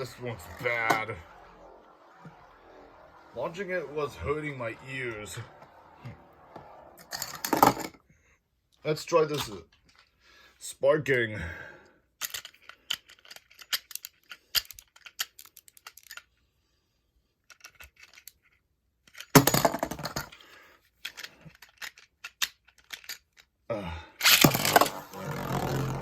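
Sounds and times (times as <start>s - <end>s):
spinning top launcher bursts: 0.0s - 8.0s.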